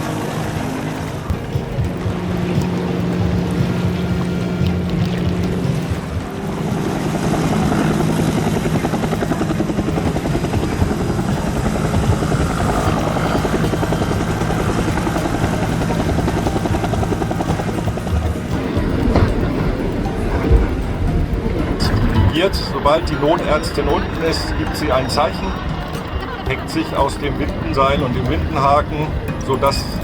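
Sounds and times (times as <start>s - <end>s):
helicopter rotor chopping: 0.0s - 30.0s
helicopter turbine running: 0.0s - 30.0s.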